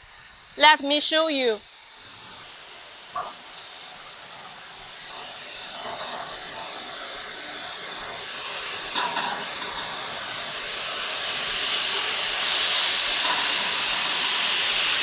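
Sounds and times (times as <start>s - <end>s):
machine hissing: 3.9s - 15.0s.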